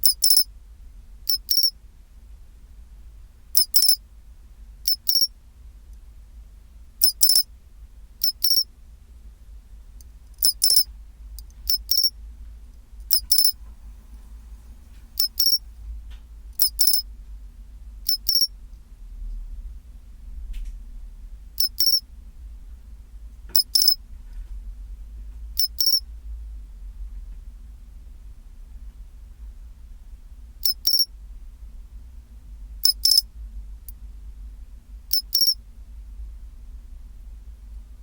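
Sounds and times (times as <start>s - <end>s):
cricket chirping: 0.0s - 0.5s, 1.3s - 1.7s, 3.6s - 4.0s, 4.8s - 5.3s, 7.0s - 7.4s, 8.2s - 8.7s, 10.4s - 10.9s, 11.7s - 12.1s, 13.1s - 13.6s, 15.2s - 15.7s, 16.6s - 17.0s, 18.1s - 18.5s, 21.6s - 22.0s, 23.6s - 24.0s, 25.6s - 26.0s, 30.6s - 31.1s, 32.8s - 33.2s, 35.1s - 35.6s.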